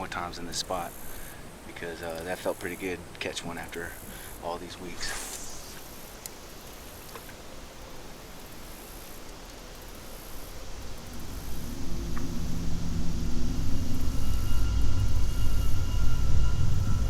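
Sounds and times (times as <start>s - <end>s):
faint high whine: 0.0s - 17.0s
low engine rumble: 10.6s - 17.0s.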